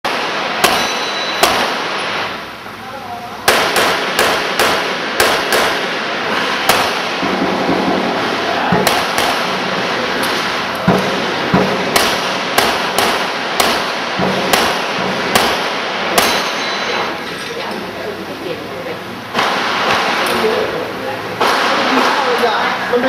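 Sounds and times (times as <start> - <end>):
handgun shots: 0.1 - 2.0, 3.5 - 5.9, 6.6 - 7.3, 8.8 - 9.6, 11.0 - 16.6.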